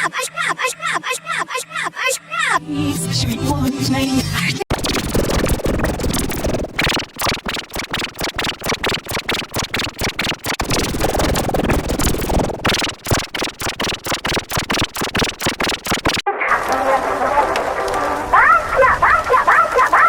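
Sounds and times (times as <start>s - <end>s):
distorted stuttering song remix: 2.6s - 18.3s.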